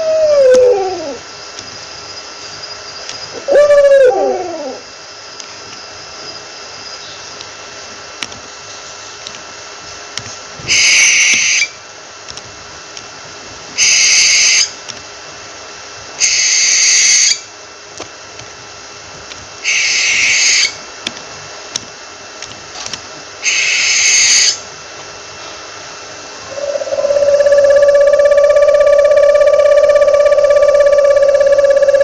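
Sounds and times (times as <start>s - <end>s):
owl hissing shrieks: 0.0s - 1.2s, 3.3s - 4.9s, 10.7s - 11.8s, 13.8s - 14.7s, 16.2s - 17.5s, 19.6s - 20.8s, 23.4s - 24.6s, 26.4s - 32.0s
owl falling call: 3.4s - 4.8s, 26.4s - 32.0s.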